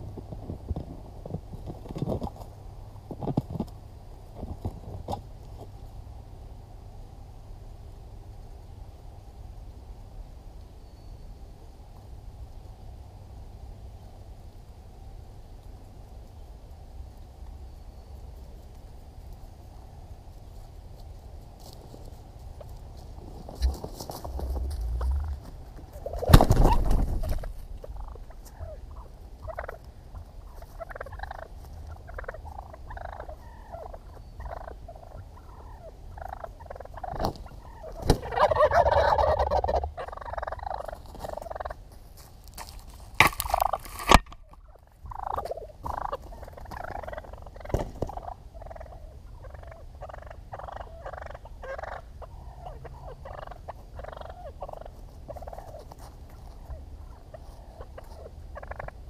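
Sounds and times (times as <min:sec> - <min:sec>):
turkeys gobbling: 0:22.1 - 0:41.9, 0:43.2 - 0:59.0.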